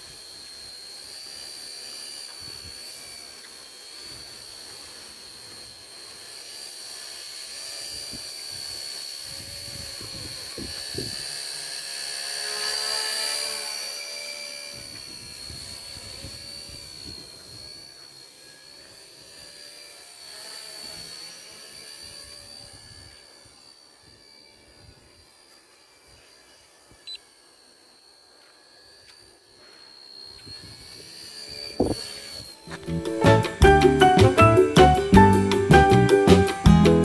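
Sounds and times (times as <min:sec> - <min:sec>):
small electric motor whining: 0:00.0 - 0:37.0
rotor whooshing: 0:25.5 - 0:37.0.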